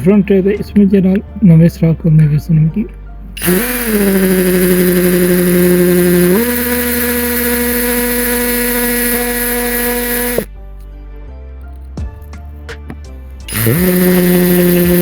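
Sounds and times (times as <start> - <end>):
electric drill running: 3.4 - 10.5, 13.5 - 15.0.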